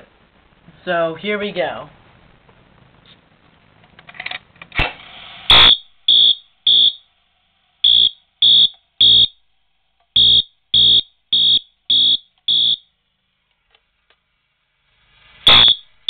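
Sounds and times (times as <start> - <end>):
fire alarm horn blasts: 5.5 - 7.0, 7.8 - 9.4, 10.2 - 12.8, 15.5 - 15.9.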